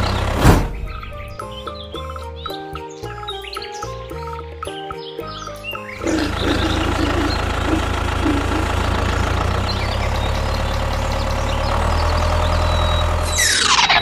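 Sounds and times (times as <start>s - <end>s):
small tractor engine running: 0.0s - 0.4s, 6.0s - 14.0s.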